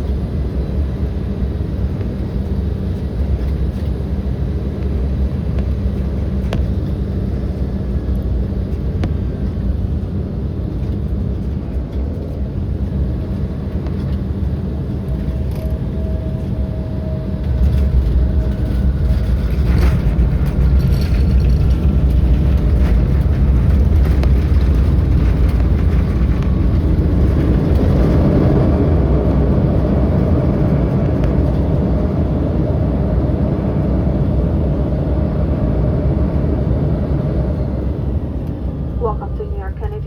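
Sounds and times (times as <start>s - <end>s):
aircraft cabin rumble: 0.0s - 40.0s.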